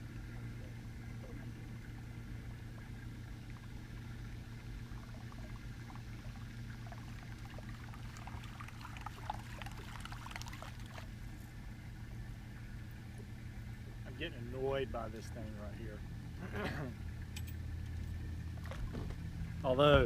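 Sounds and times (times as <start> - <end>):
steady low hum: 0.0 - 20.0
water splashing and trickling: 0.0 - 20.0.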